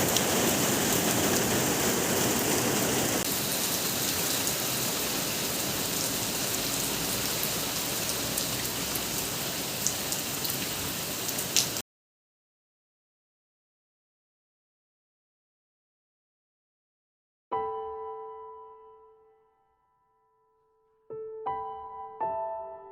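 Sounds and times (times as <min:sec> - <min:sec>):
steady rain: 0:00.0 - 0:11.8.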